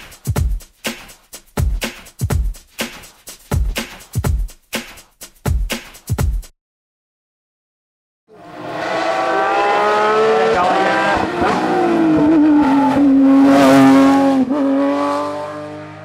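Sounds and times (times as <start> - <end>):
rally car engine revving: 8.3 - 16.0.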